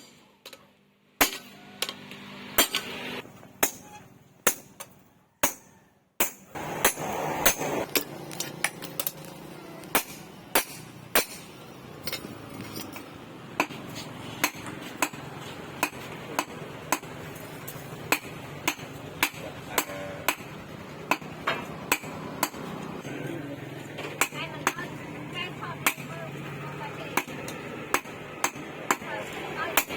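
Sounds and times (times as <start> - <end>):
steady background noise: 0.0 - 29.9
hammer striking steel on anvil: 1.2 - 2.0, 2.6 - 2.9, 3.6 - 9.1, 9.9 - 12.3, 14.4 - 15.2, 15.8 - 20.5, 21.1 - 22.7, 24.0 - 24.8, 27.2 - 29.1.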